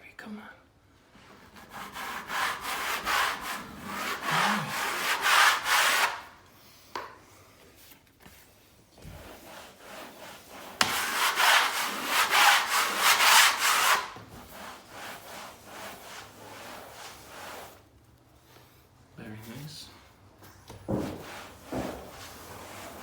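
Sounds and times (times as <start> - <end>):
spatula scraping wallpaper: 1.2 - 6.4, 7.8 - 18.8, 20.9 - 23.0.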